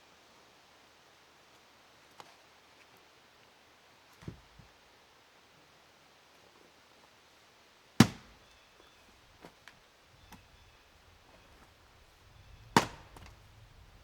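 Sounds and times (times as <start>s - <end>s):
axe splitting wood: 8.0s - 8.4s, 12.3s - 13.9s.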